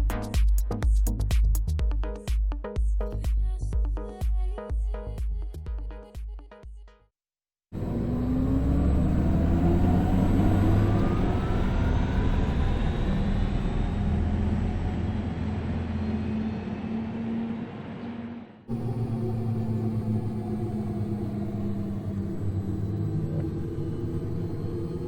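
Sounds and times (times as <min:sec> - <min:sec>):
electric car whine accelerating: 0:07.8 - 0:25.0.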